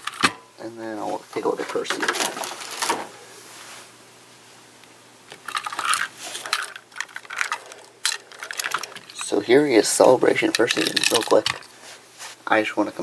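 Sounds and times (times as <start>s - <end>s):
plastic packaging crinkling: 1.4s - 3.0s, 5.4s - 12.4s.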